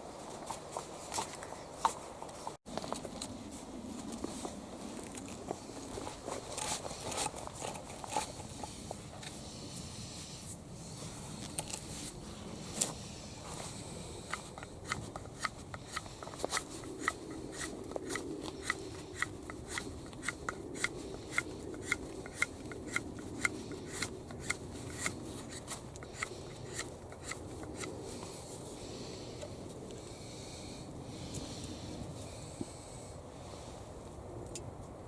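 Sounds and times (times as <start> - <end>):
hand tool clicking on wood: 14.3 - 28.0.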